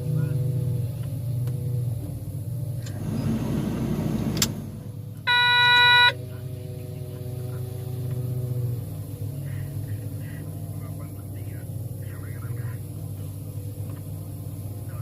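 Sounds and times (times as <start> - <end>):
diesel engines rumbling: 0.0 - 15.0
horn blast: 5.3 - 6.2.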